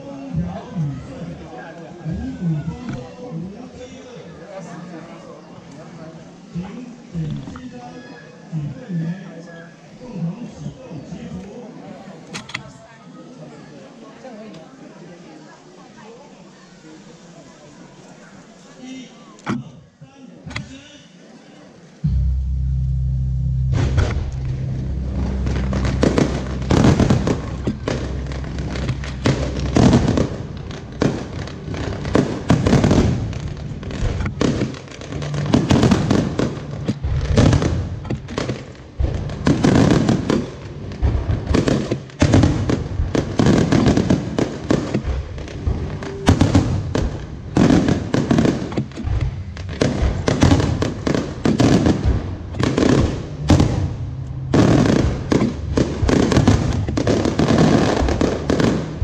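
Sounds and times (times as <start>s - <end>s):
fireworks bursting: 23.8s - 59.0s.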